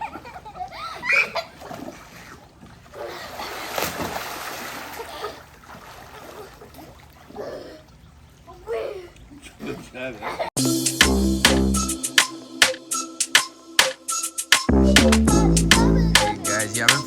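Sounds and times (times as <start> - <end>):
water splashing in a pool: 0.0 - 10.4.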